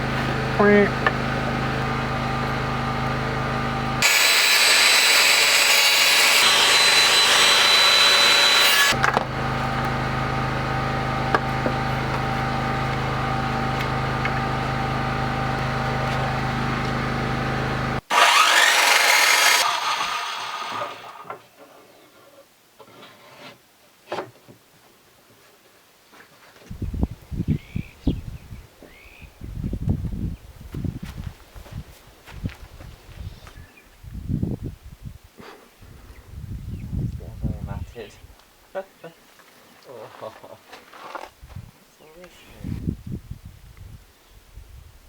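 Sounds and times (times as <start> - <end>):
power tool humming: 0.0 - 21.3
power tool cutting timber: 0.0 - 21.4.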